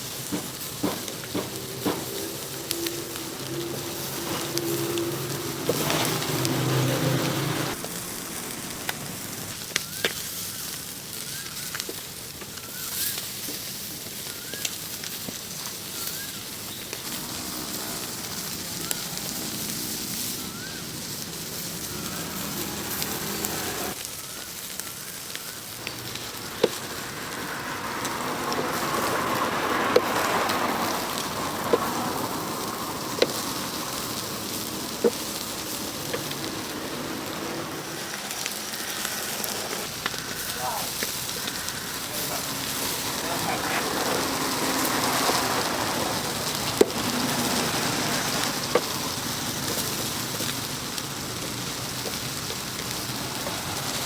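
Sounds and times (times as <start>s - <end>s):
sharp pops: 0.0s - 6.6s, 24.0s - 50.6s
charcoal fire crackling and sizzling: 0.0s - 54.0s.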